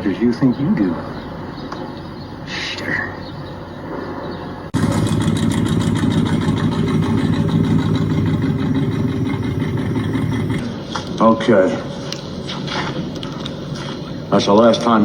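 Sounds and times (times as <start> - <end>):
car engine running loud: 4.7 - 11.1.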